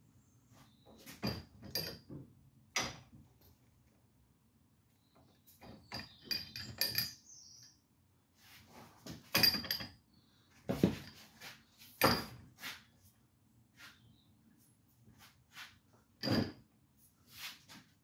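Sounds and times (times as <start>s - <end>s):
metal clanks and knocks: 1.1s - 3.2s, 5.6s - 7.2s, 9.1s - 10.0s, 16.2s - 16.7s.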